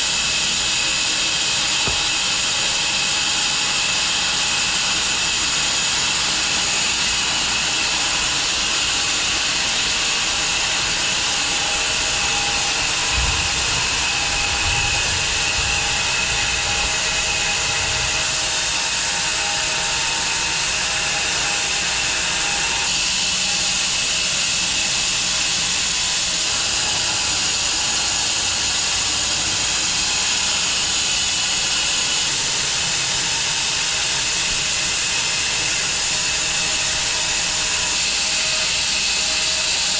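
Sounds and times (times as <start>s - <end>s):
bandsaw blade cutting log: 1.6s - 3.2s.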